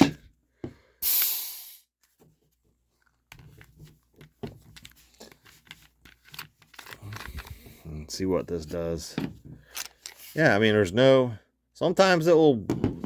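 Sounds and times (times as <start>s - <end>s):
gun parts clicking: 5.6s - 7.5s.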